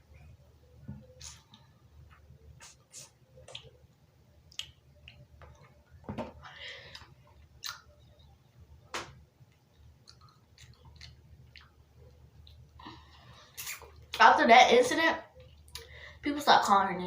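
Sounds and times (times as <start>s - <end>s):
chewing mouth clicks and smacks: 4.5s - 5.7s, 6.9s - 8.0s, 9.5s - 12.7s.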